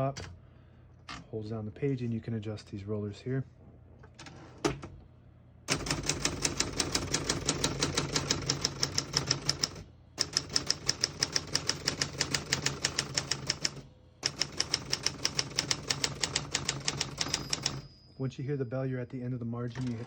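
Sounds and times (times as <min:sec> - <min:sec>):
manual typewriter keystrokes: 0:05.7 - 0:17.9, 0:19.7 - 0:20.0.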